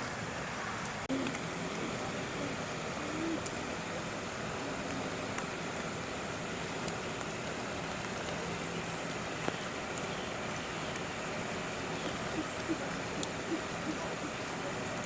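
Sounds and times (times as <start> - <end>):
outdoor background noise: 0.0 - 15.0.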